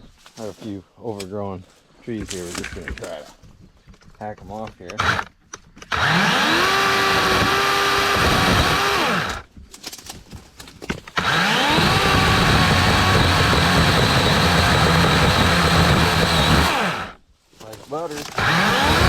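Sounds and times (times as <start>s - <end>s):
electric chainsaw whining: 5.0s - 5.3s, 5.9s - 9.5s, 11.2s - 17.2s, 18.2s - 19.0s.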